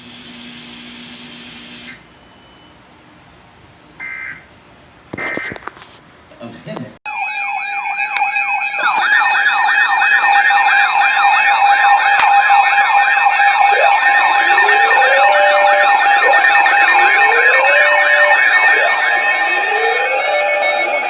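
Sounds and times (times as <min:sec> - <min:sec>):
electronic sirens yelping: 0:04.0 - 0:04.5, 0:07.1 - 0:21.0
siren whoops: 0:07.1 - 0:21.0.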